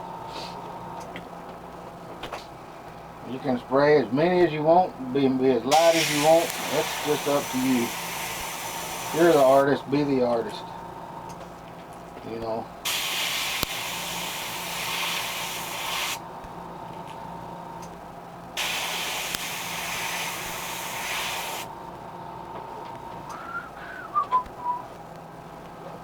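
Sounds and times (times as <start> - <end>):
airbrush spraying paint: 5.7 - 9.6, 12.8 - 16.2, 18.6 - 21.7.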